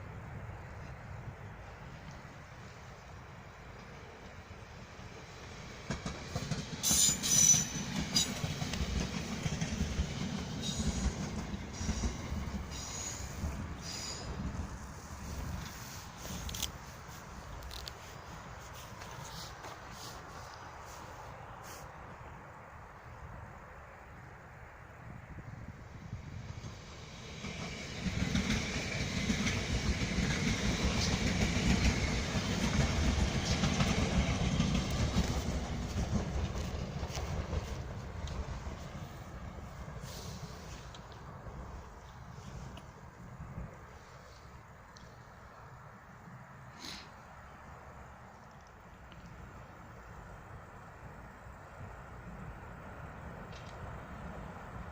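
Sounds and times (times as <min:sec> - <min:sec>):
train rumble and hiss: 0:00.0 - 0:54.9
train wheels clattering over rails: 0:05.4 - 0:16.7, 0:26.6 - 0:42.4.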